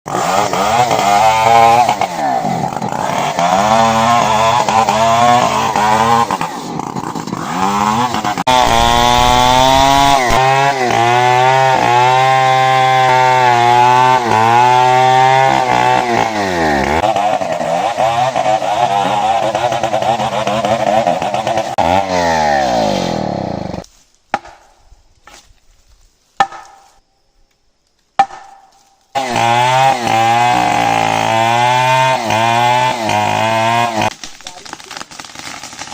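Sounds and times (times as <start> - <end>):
chainsaw cutting wood: 0.1 - 25.4, 28.2 - 35.9.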